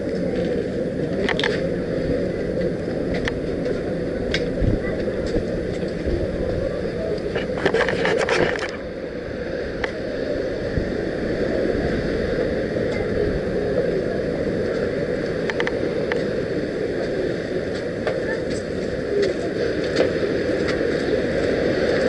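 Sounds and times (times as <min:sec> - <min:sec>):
crackling: 0:00.0 - 0:10.0
ocean surf: 0:00.0 - 0:22.0
wind: 0:00.0 - 0:22.0.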